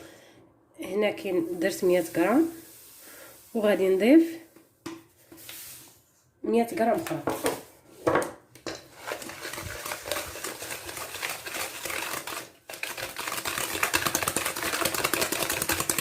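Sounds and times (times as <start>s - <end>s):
whisk clicking against a bowl: 9.1s - 16.0s.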